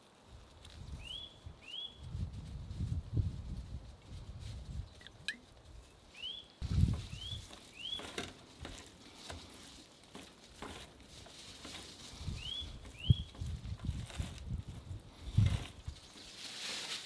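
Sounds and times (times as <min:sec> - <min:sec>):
small bird chirping: 0:00.9 - 0:02.0, 0:06.1 - 0:08.2, 0:12.2 - 0:13.6.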